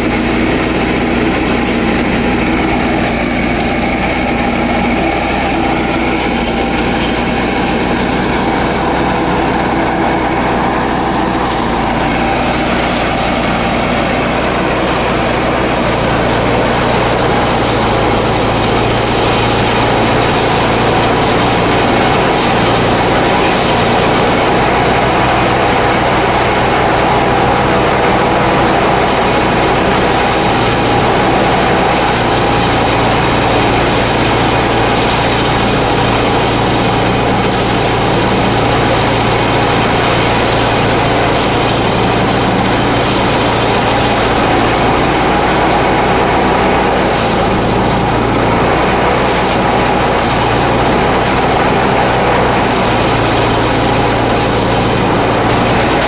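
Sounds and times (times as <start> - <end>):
thresher engine drone: 0.0 - 56.0.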